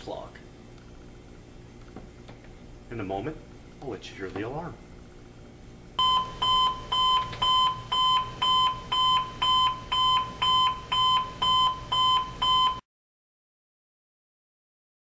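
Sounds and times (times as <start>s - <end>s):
electronic alarm beeping: 6.0s - 12.8s.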